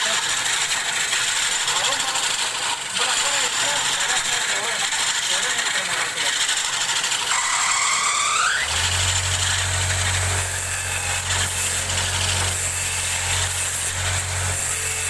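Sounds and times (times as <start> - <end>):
motor starting with squeal and hum: 0.0 - 15.0.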